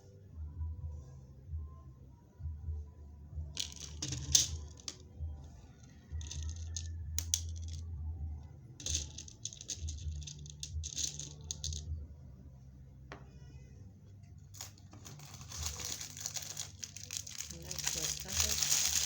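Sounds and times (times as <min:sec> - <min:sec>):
beads rattling and clicking: 0:03.6 - 0:05.0, 0:05.9 - 0:07.8, 0:08.8 - 0:11.9, 0:14.6 - 0:19.0.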